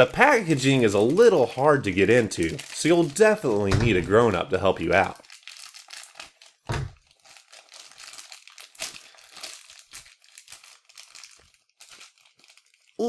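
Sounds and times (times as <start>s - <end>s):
plastic packaging crinkling: 0.0s - 13.0s
thump: 6.7s - 6.9s.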